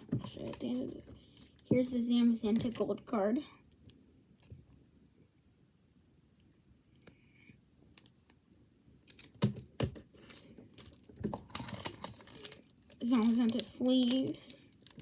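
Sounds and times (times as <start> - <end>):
packaging rustling: 10.1 - 15.0.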